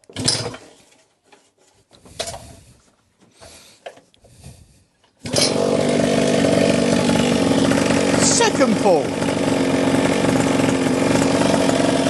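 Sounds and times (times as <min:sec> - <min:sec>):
pull starter cord: 0:00.0 - 0:00.8, 0:05.2 - 0:12.0
small two-stroke engine running: 0:05.2 - 0:12.0.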